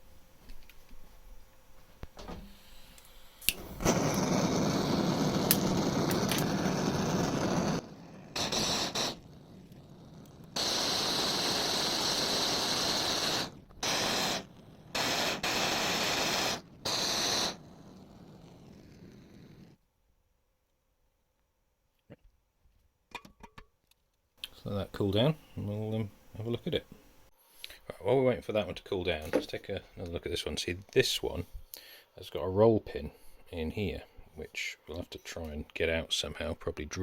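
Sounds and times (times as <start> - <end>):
blowtorch igniter click: 2.0 - 19.6
blowtorch flame hissing: 2.2 - 19.8.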